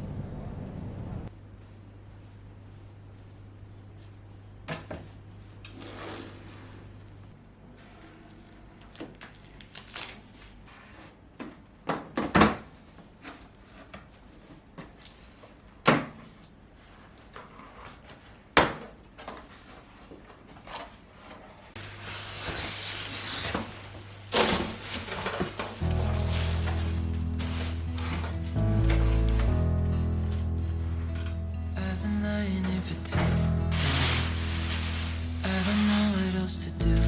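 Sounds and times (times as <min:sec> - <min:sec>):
background music: 0:25.8 - 0:37.0
even hissing: 0:33.4 - 0:37.0.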